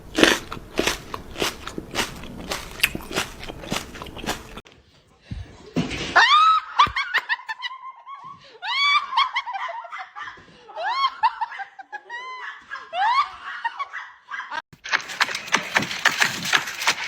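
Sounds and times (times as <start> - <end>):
person laughing in high squeals: 6.2 - 14.6
rattle of clicks and rustling: 14.8 - 17.0.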